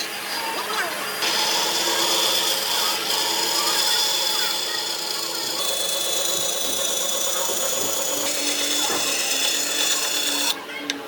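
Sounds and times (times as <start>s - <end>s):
power tool running on wood: 0.0s - 10.6s.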